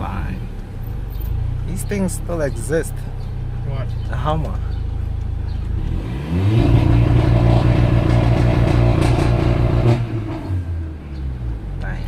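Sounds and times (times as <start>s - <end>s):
car engine revving hard: 5.6s - 11.5s.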